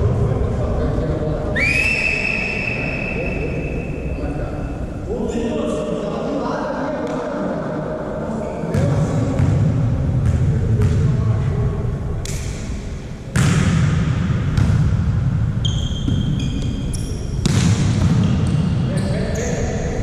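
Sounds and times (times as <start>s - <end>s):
low hall rumble: 0.0s - 15.6s
volleyball hits and bounces: 13.3s - 15.1s, 17.4s - 18.7s
shoes squeaking on court floor: 15.6s - 17.5s, 18.2s - 19.8s.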